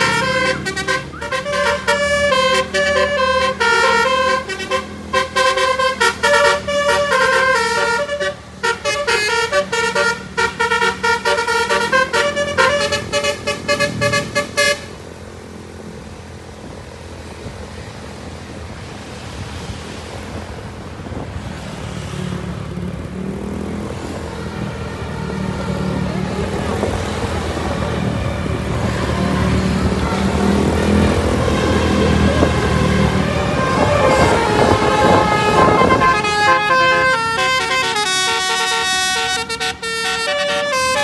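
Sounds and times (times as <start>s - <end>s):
multi-tone bus horn melody: 0.0s - 15.0s, 27.5s - 41.0s
bus engine and road noise: 0.0s - 41.0s.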